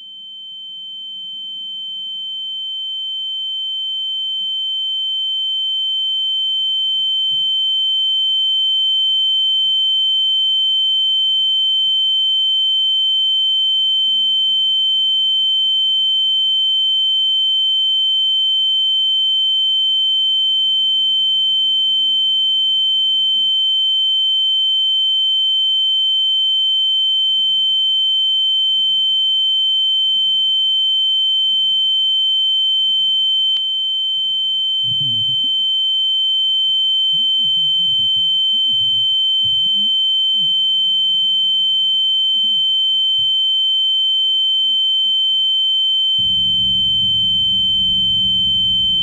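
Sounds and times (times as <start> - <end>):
fainter lower tone: 34.8 - 35.5, 37.1 - 40.6, 46.2 - 49.0
faint muffled low sounds: 34.9 - 35.4
high-pitched electronic tone: 46.2 - 49.0
low buzz: 46.2 - 49.0.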